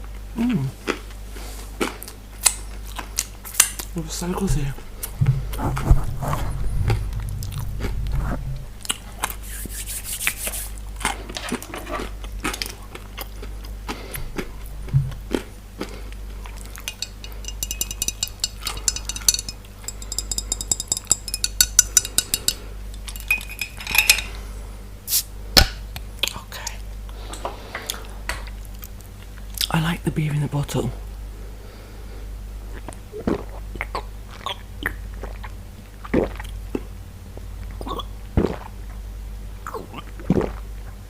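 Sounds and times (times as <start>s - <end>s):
biting and chewing food: 10.9s - 17.5s
cutlery and dishes clinking: 16.8s - 24.4s.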